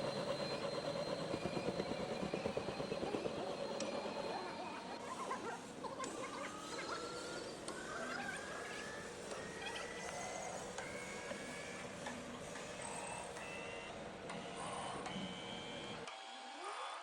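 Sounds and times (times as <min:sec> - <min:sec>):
machine running: 0:00.0 - 0:07.6.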